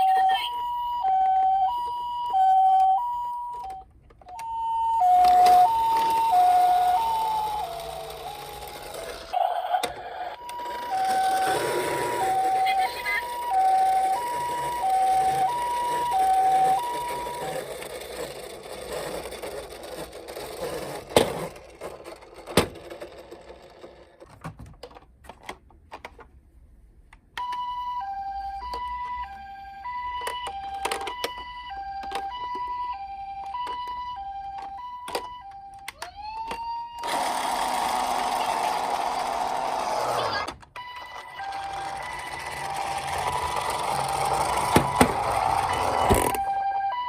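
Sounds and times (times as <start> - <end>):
siren rising to a steady wail: 0.0 - 17.7, 27.4 - 47.0
toy siren two-tone: 0.0 - 17.9, 27.4 - 47.0.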